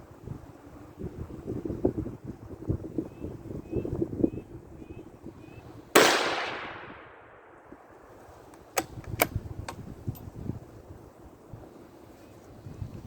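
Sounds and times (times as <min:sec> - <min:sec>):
wind buffeting microphone: 0:00.0 - 0:13.0
rifle shot: 0:06.0 - 0:07.6.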